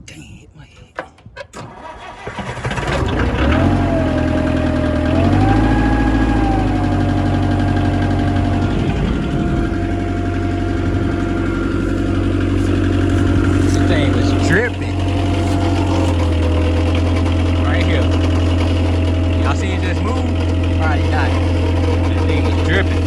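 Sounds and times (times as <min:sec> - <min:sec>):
skid steer engine running: 0:01.7 - 0:23.0
thin steady whine: 0:05.6 - 0:19.9.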